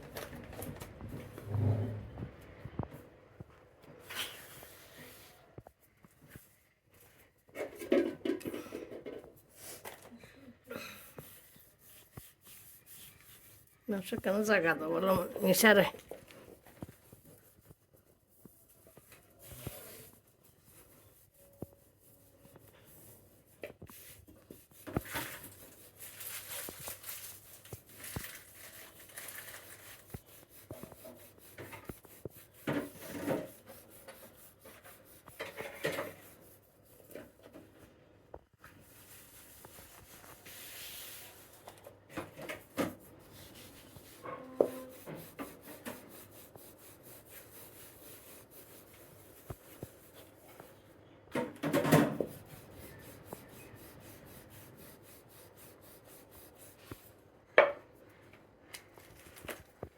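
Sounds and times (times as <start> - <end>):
dough rubbing and scraping: 11.0 - 37.6, 38.5 - 50.9, 51.7 - 57.2.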